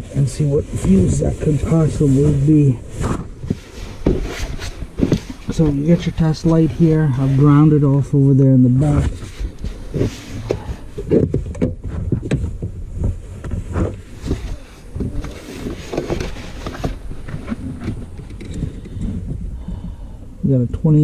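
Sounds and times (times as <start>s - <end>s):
knocks and clicks of handling: 9.0s - 19.4s.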